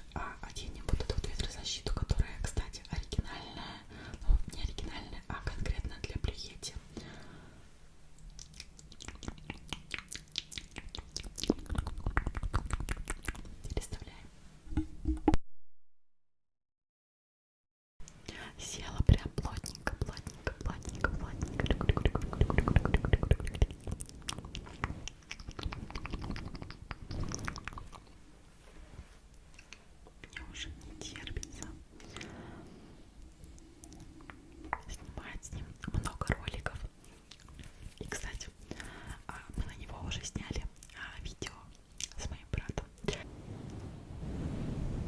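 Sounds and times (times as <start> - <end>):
wet mouth clicks and lip smacks: 8.2 - 13.8, 19.4 - 28.2, 35.8 - 38.3, 42.0 - 42.2.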